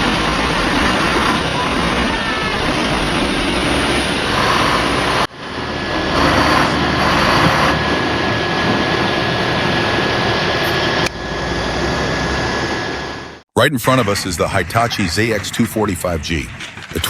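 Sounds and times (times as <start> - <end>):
heavy machine engine running: 0.0 - 13.4.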